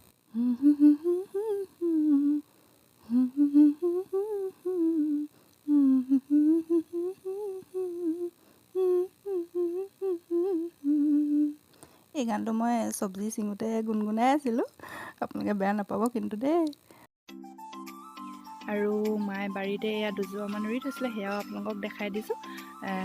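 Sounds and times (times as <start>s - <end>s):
woman humming a melody: 0.3s - 2.4s, 3.0s - 11.6s, 18.6s - 23.0s.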